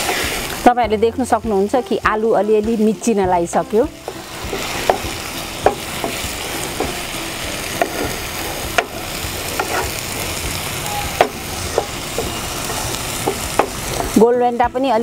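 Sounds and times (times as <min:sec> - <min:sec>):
food sizzling in frying pan: 0:00.0 - 0:15.0
spoon scraping and tapping pan: 0:04.0 - 0:07.0, 0:09.6 - 0:10.0, 0:11.2 - 0:14.2.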